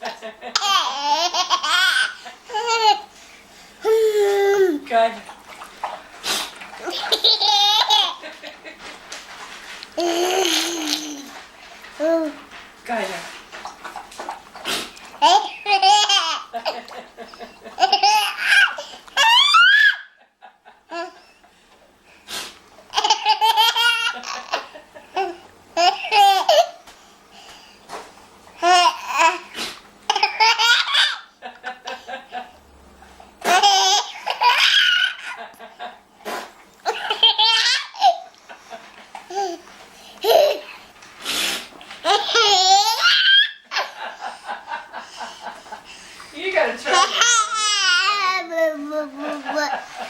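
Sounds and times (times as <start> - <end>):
baby laughing: 0.0 - 3.1, 3.8 - 4.9, 6.8 - 8.3, 10.0 - 11.4, 15.2 - 20.2, 22.9 - 26.8, 28.6 - 29.5, 30.1 - 31.3, 33.4 - 35.6, 36.8 - 38.3, 39.2 - 39.6, 40.2 - 40.7, 42.0 - 44.4, 46.9 - 50.0.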